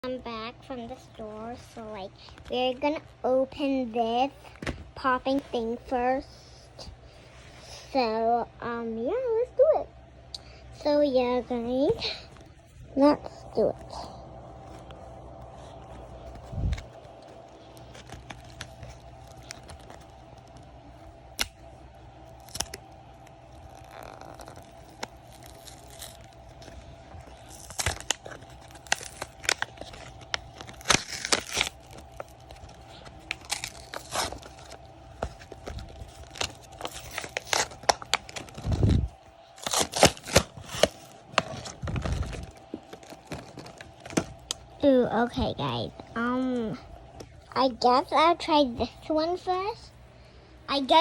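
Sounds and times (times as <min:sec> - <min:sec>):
plastic packaging crackling: 0:12.0 - 0:46.1.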